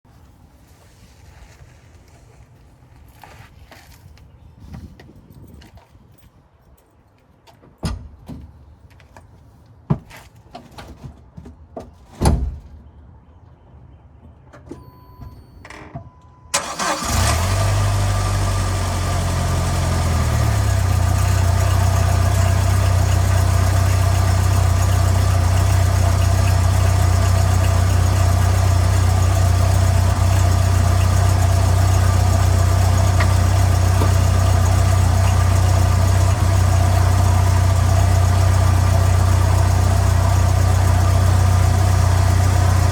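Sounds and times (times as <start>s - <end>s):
brief beep: 14.7s - 16.6s
engine cranking and idling: 16.5s - 42.9s.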